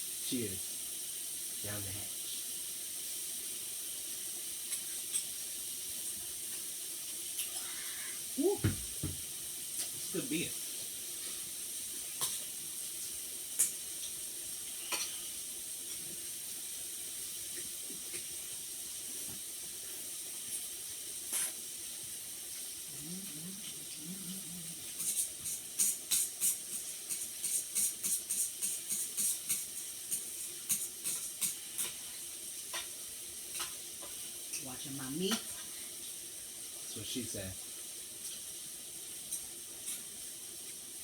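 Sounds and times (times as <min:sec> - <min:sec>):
broth simmering with a hiss: 0:00.0 - 0:41.0.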